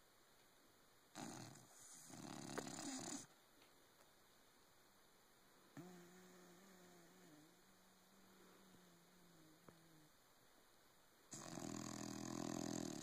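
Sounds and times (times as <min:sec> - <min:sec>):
steady low hum: 0:00.0 - 0:13.0
pet snoring: 0:01.1 - 0:03.3, 0:05.8 - 0:10.1, 0:11.3 - 0:13.0.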